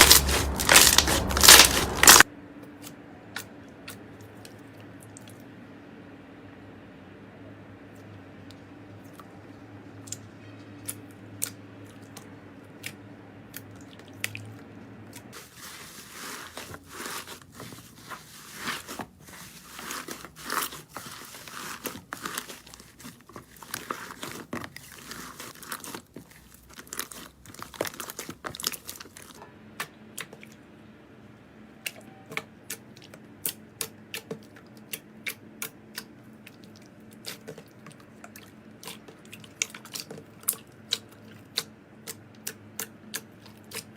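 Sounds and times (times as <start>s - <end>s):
slime squished by hand: 0.0s - 2.2s, 15.2s - 29.4s.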